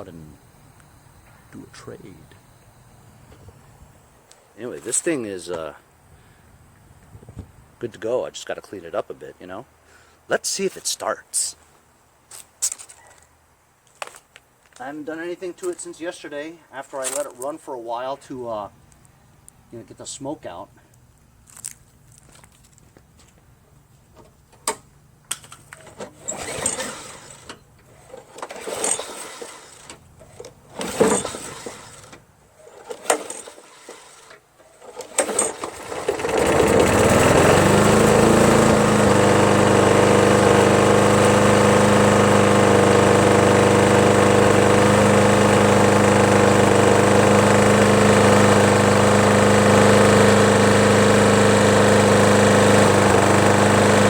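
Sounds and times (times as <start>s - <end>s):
lawn mower engine starting: 0.0s - 3.8s, 24.5s - 54.0s.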